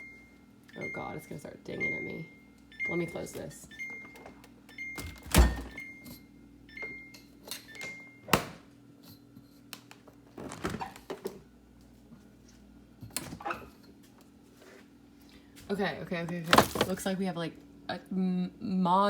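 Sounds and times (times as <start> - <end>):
refrigerator alarm beeping: 0.0 - 8.7
door shutting thud: 5.0 - 5.8
jars and containers clattering: 16.3 - 17.0.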